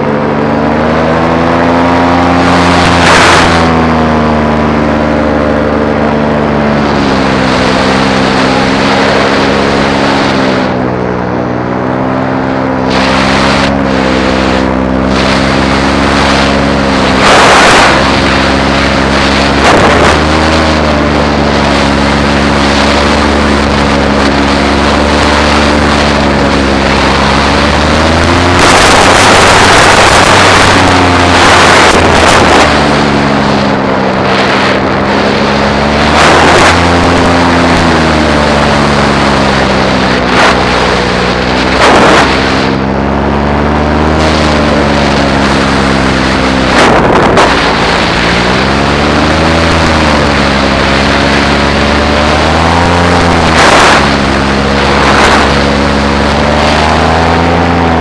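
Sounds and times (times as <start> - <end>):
paramotor engine and propeller: 0.0 - 58.0
wind gusts on microphone: 12.8 - 58.0.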